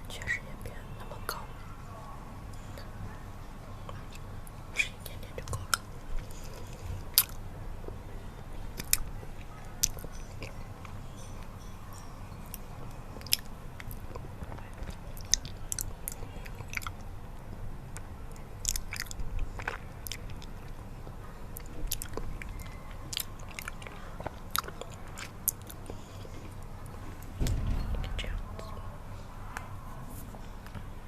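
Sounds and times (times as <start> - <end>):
low background hiss: 0.0 - 31.0.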